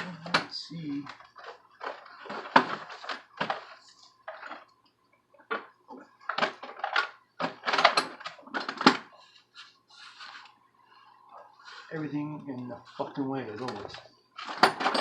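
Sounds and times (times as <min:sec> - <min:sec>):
metal parts clattering: 0:13.9 - 0:15.0.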